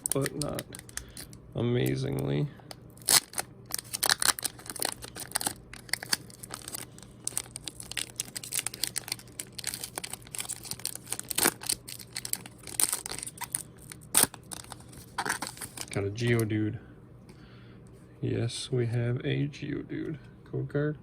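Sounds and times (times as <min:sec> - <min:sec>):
foil wrapper crinkling and tearing: 0:00.0 - 0:02.2, 0:03.0 - 0:16.4.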